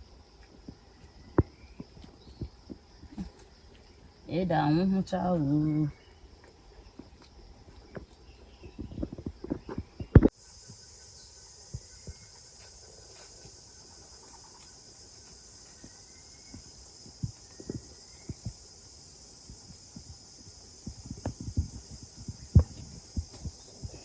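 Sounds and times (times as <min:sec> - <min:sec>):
insects chorus: 0:00.0 - 0:24.0.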